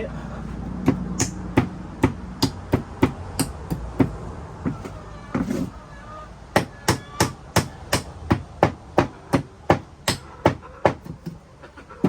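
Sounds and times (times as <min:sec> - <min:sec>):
hammer striking wood: 0:00.8 - 0:04.2, 0:06.6 - 0:11.4.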